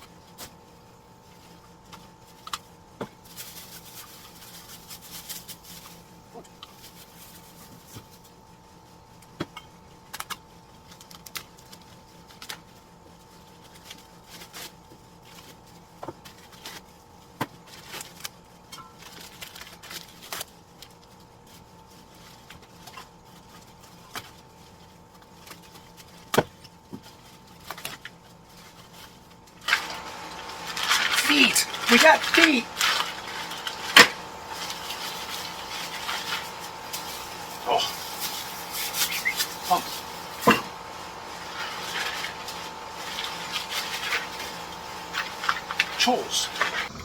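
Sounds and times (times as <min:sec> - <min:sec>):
packaging rustling: 0:03.2 - 0:06.1, 0:27.1 - 0:47.0
faint steady hum: 0:28.4 - 0:47.0.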